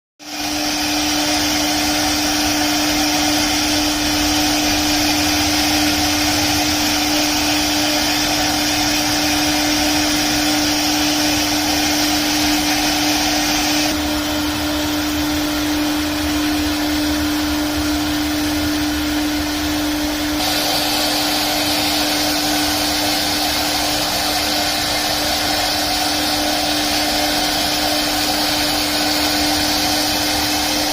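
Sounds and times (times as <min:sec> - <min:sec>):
wood router whining: 0:00.2 - 0:30.9
high hiss: 0:20.3 - 0:30.9.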